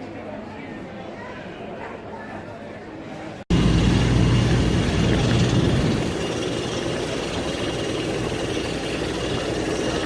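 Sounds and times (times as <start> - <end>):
airliner mechanical hum: 3.5 - 10.0.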